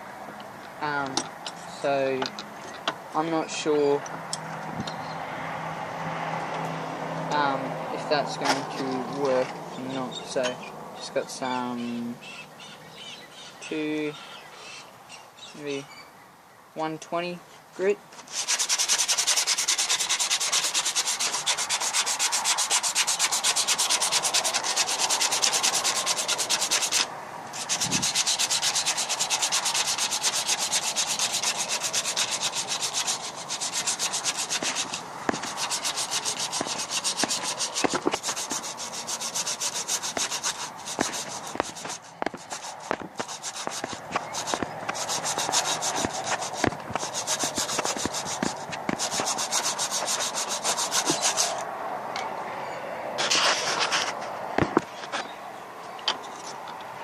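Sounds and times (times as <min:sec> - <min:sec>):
hand sanding metal: 0:18.2 - 0:51.6.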